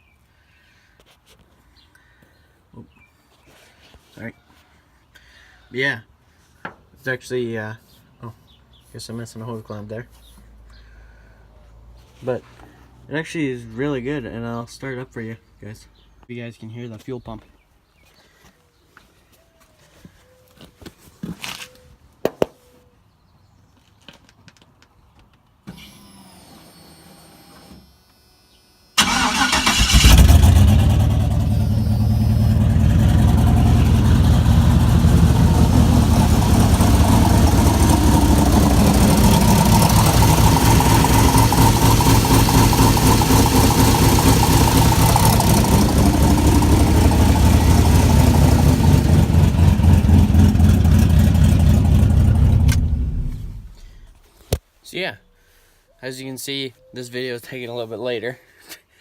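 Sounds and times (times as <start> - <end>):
electric fuel pump humming: 25.7 - 49.6
car engine cranking and idling: 29.0 - 54.1.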